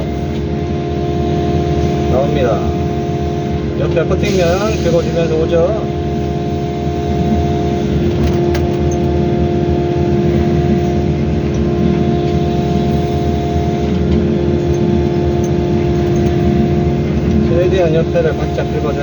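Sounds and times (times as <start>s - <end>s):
constant whine: 0.0s - 19.0s
excavator diesel engine running: 0.0s - 19.0s.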